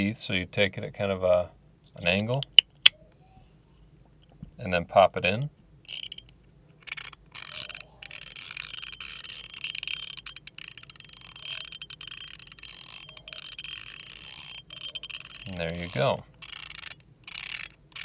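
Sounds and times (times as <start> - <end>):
spinning coin ratcheting ticks: 5.2 - 18.0.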